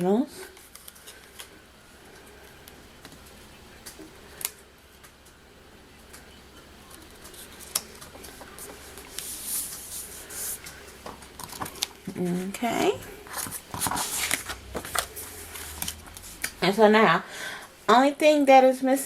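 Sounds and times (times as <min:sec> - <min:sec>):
paper rustling: 0:06.9 - 0:11.9, 0:13.2 - 0:16.6.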